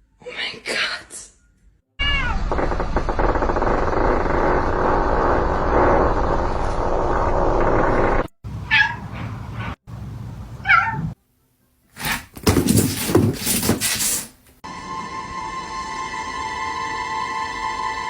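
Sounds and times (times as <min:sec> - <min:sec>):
cat meowing: 0:02.0 - 0:02.4, 0:08.7 - 0:09.0, 0:10.6 - 0:11.2
noisy cat sound: 0:08.6 - 0:09.8, 0:10.6 - 0:11.2.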